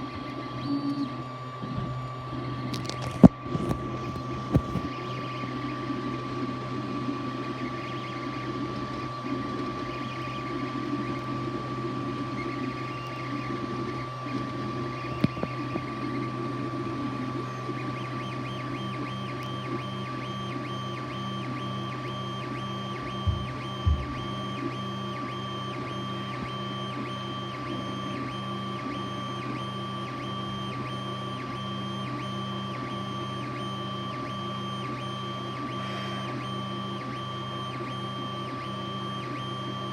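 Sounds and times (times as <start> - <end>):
stepper motors driving print head: 0.0 - 39.9
fan hum with high tone: 9.8 - 39.9.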